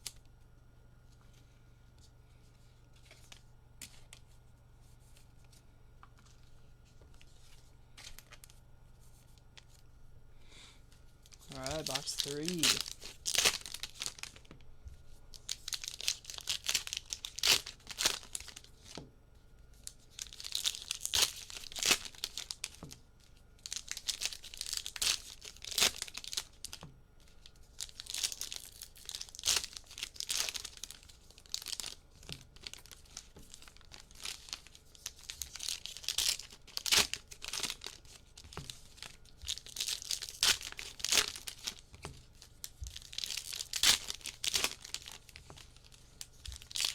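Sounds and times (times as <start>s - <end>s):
wrappers tearing and crinkling: 11.2s - 14.5s, 15.3s - 19.0s, 19.8s - 46.9s.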